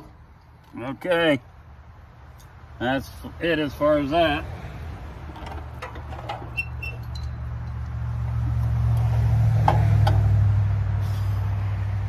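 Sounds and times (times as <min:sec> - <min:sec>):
light clinks: 0:06.9 - 0:07.9.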